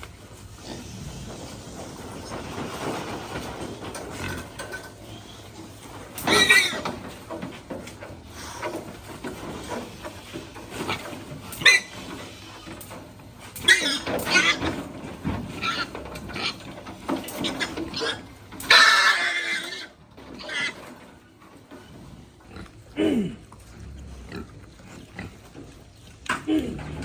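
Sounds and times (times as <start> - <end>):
pigs crying: 4.1 - 7.2, 10.7 - 12.8, 13.5 - 14.9, 15.5 - 20.8, 21.8 - 27.0
pig grunt: 21.7 - 27.0.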